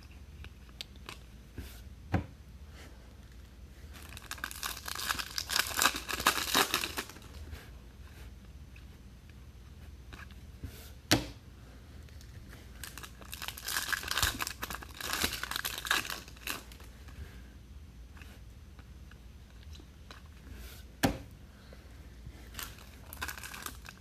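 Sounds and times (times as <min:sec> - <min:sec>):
foil wrappers tearing and crinkling: 0:04.0 - 0:07.4, 0:12.8 - 0:16.9, 0:22.6 - 0:24.0.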